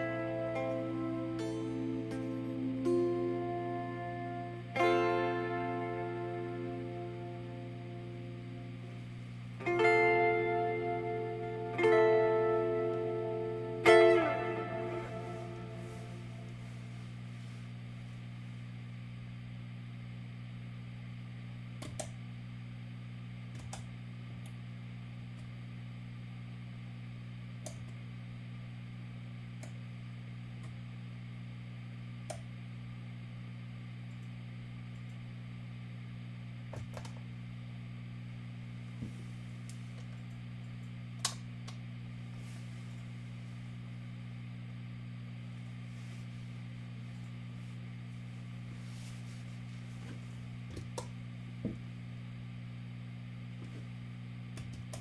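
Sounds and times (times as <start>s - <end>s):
low hum: 0.0s - 18.9s.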